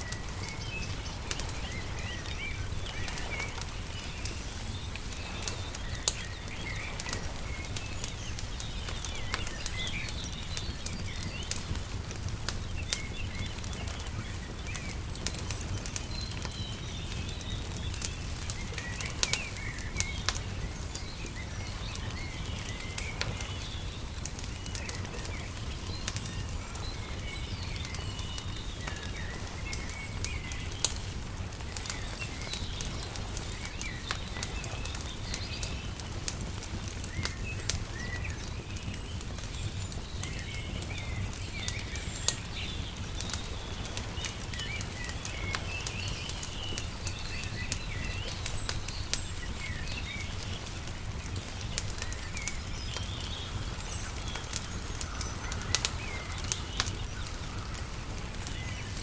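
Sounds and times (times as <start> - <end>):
small birds chirping: 0.0 - 59.0
wood fire crackling and popping: 0.0 - 59.0.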